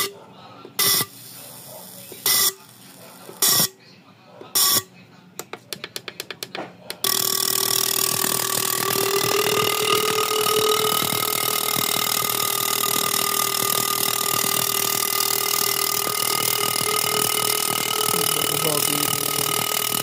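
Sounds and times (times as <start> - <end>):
machine hissing with steady tones: 0.8 - 3.7, 7.0 - 20.0.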